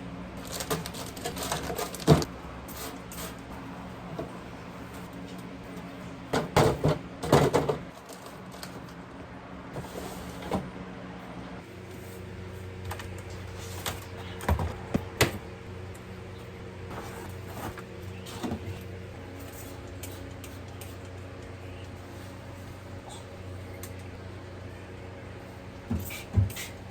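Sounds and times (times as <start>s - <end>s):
containers knocking and clattering: 6.4s - 8.0s.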